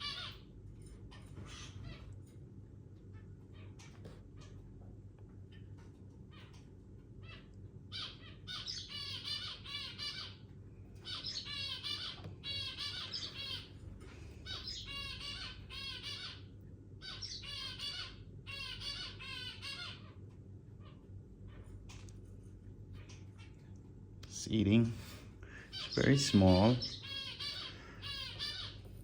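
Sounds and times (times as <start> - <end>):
low steady hum: 0.0 - 29.0
finch chick begging chirps: 7.9 - 10.4, 11.0 - 13.7, 14.5 - 16.4, 17.0 - 20.0, 25.7 - 28.9.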